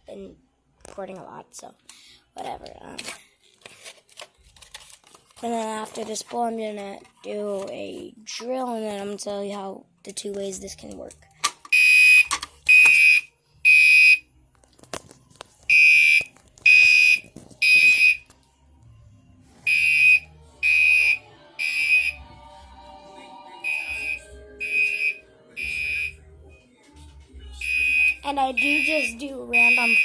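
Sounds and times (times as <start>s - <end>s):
fire alarm horn blasts: 11.7s - 14.2s, 19.7s - 22.2s, 23.6s - 26.2s, 27.6s - 30.0s.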